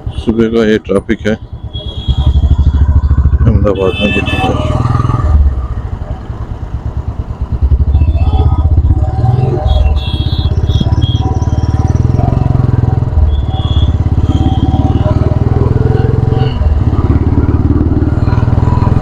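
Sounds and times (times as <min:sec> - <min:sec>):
motorcycle engine running: 0:01.1 - 0:19.0.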